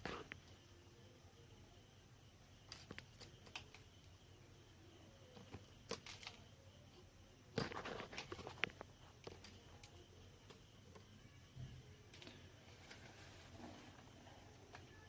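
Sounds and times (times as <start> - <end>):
wires rustling: 5.3 - 11.0, 12.1 - 15.0.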